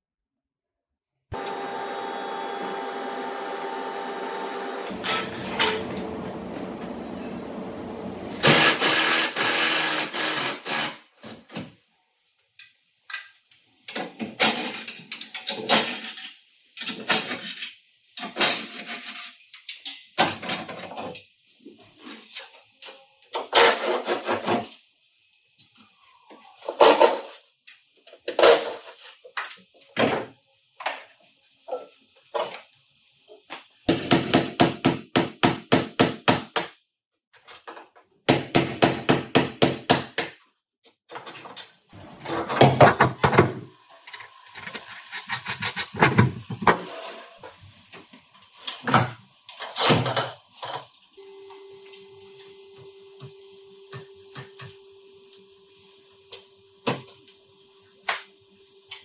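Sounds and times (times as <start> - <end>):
machine hum: 1.4 - 8.5.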